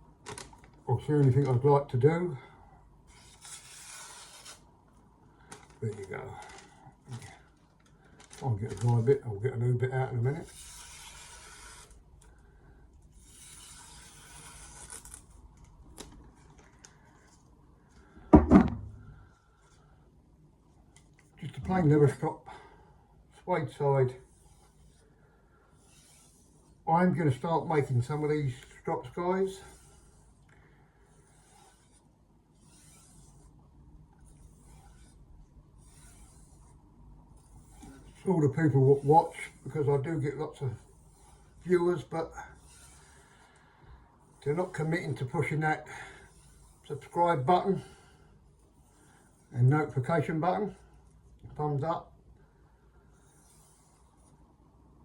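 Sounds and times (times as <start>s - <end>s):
rustling rubbing noise: 10.0s - 12.0s, 13.1s - 15.4s, 25.8s - 28.3s, 29.0s - 30.4s, 31.1s - 43.5s, 46.2s - 48.0s, 53.1s - 54.6s
loud thump of object set down: 18.3s - 19.0s
knife blade rubbing on leather strop: 32.6s - 33.4s.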